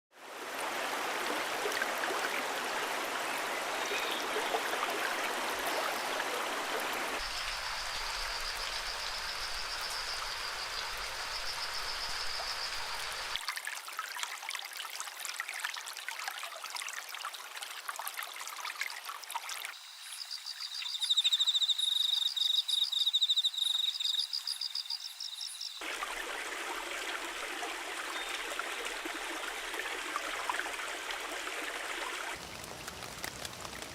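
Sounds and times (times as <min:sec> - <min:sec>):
stream water rushing: 0:00.2 - 0:13.5, 0:25.8 - 0:33.9.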